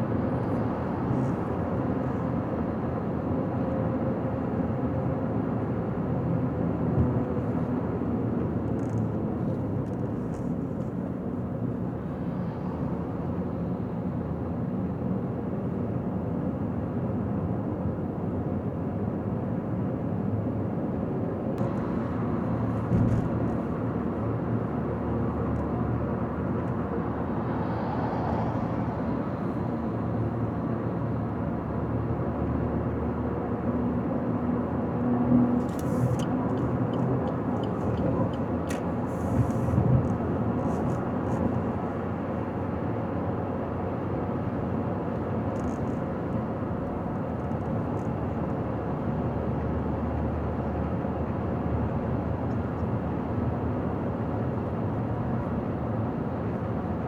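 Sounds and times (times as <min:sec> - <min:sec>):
brief low thump: 0:22.8 - 0:23.6
tyre and engine noise: 0:35.4 - 0:50.3.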